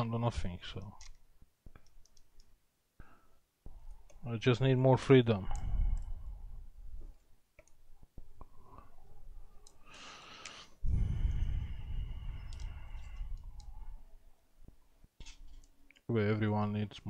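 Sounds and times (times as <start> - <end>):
breath-like rush: 9.8 - 13.9.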